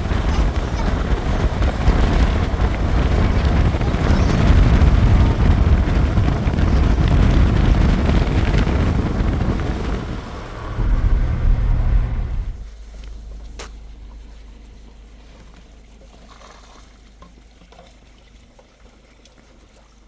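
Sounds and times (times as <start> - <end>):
wind buffeting microphone: 0.0 - 14.9.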